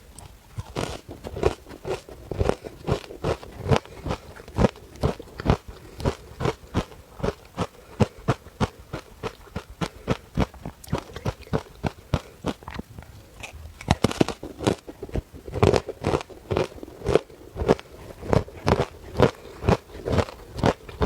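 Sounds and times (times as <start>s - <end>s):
ice being chewed: 0.0s - 21.0s.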